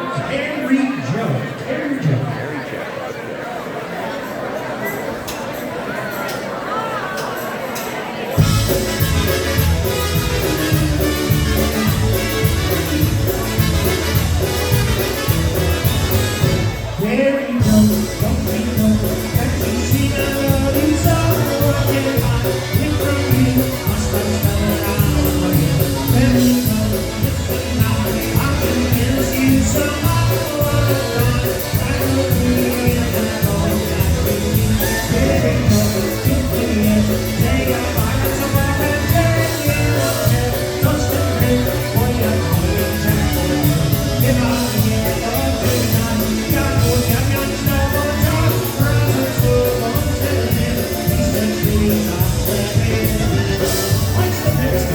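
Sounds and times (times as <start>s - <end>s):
polka band playing: 8.3s - 54.9s
person singing: 16.9s - 54.9s.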